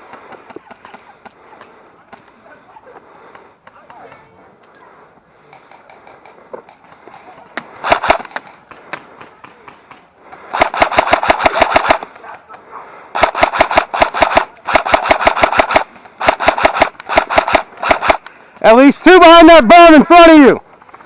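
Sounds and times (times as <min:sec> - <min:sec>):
airsoft rifle firing bursts: 0:07.6 - 0:12.4, 0:13.1 - 0:18.3.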